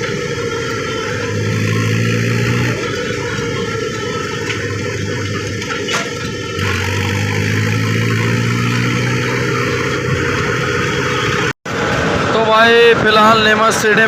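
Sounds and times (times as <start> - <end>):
low hum: 0.0 - 12.3
tractor diesel engine running: 0.0 - 14.0.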